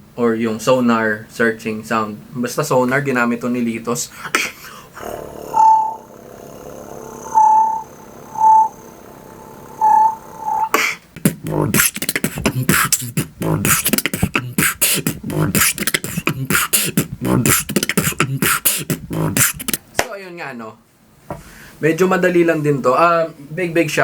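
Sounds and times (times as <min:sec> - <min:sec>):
vocal sonar pings: 0:05.4 - 0:10.7
beatbox beat: 0:06.7 - 0:19.8.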